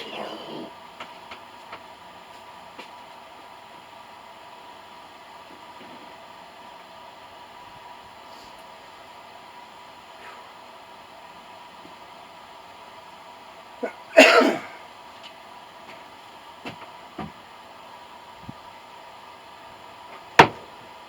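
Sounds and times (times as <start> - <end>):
person coughing: 13.8 - 14.8.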